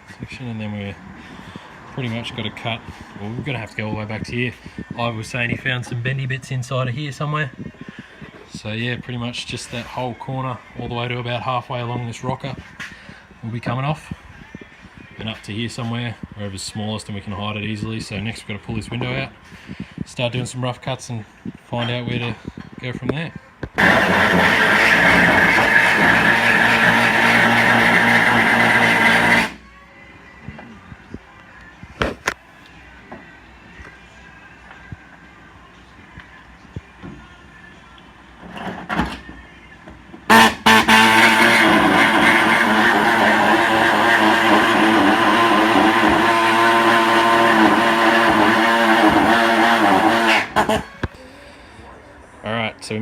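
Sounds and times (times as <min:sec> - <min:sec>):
power tool cutting sheet metal: 0:23.8 - 0:29.6, 0:40.3 - 0:50.9.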